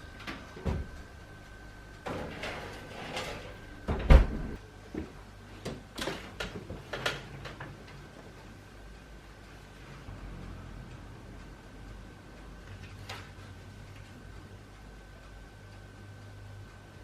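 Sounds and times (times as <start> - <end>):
door shutting with a thud: 0.6 - 1.0, 2.1 - 4.6.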